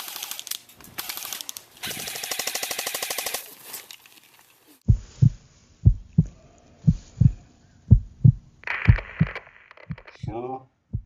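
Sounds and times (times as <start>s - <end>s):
airsoft gun full-auto burst: 1.0s - 3.5s
deep heartbeat thumps: 4.9s - 11.0s.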